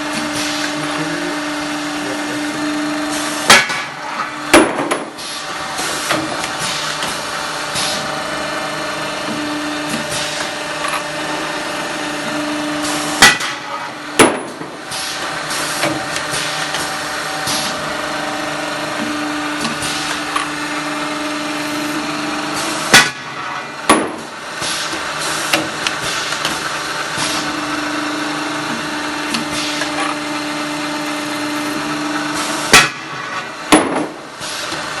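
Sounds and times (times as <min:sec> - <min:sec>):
sharp machine clanks: 0:03.1 - 0:05.2, 0:12.9 - 0:15.0, 0:22.6 - 0:26.6, 0:32.3 - 0:34.3.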